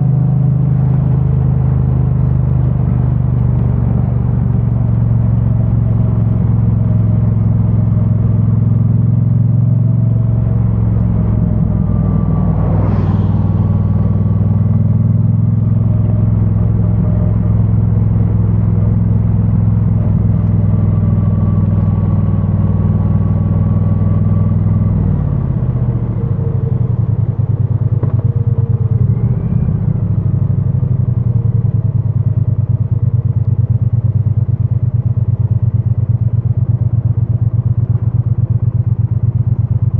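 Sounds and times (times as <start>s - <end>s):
motorcycle engine running: 0.0s - 39.9s
brief rushing noise: 12.0s - 14.7s.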